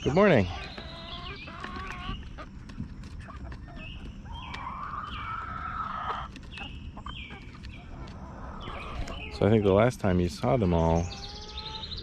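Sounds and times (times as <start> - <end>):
hens clucking and calling: 0.0 - 12.0.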